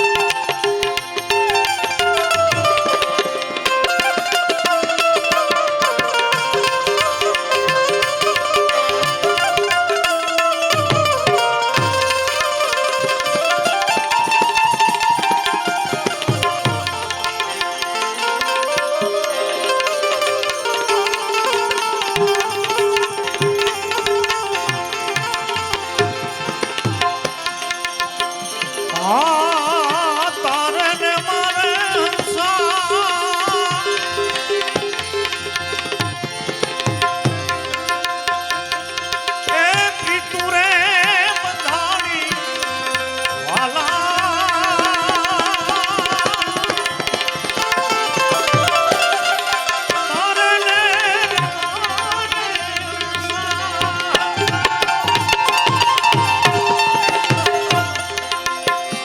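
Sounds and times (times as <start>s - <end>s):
tabla beat: 0.0s - 59.0s.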